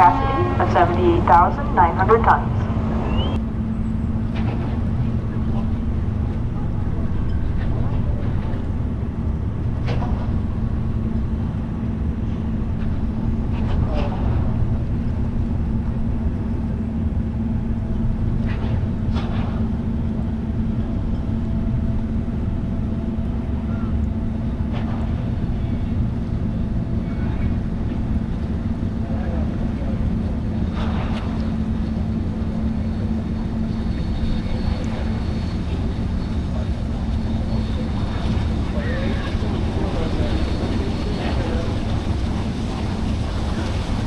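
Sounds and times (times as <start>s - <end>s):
constant low hum: 0.0s - 3.4s
ship diesel engines droning: 0.0s - 44.0s.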